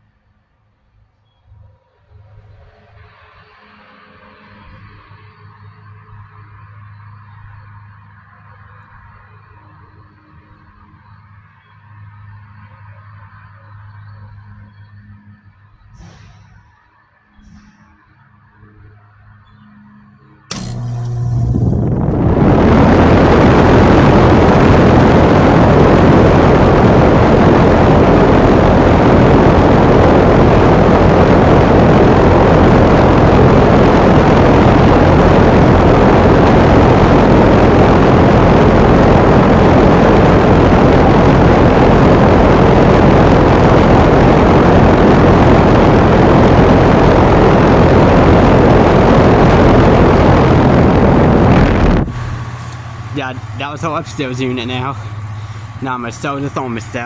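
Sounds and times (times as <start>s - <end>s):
fan air rushing: 1.5s - 6.7s, 20.5s - 57.0s
low compressor hum: 19.5s - 57.0s.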